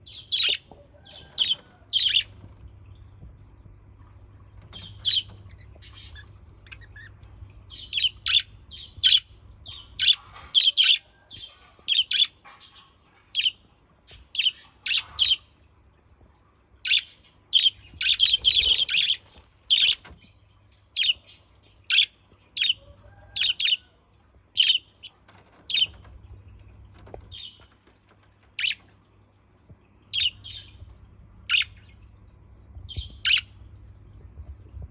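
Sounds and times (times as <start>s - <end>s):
faint low hum: 0.0s - 34.9s
budgerigars chirping and squawking: 0.1s - 2.6s, 4.7s - 7.1s, 7.7s - 15.4s, 16.9s - 20.2s, 21.0s - 21.3s, 21.9s - 23.8s, 24.6s - 26.1s, 28.6s - 28.8s, 30.1s - 30.8s, 31.5s - 31.8s, 32.9s - 33.5s.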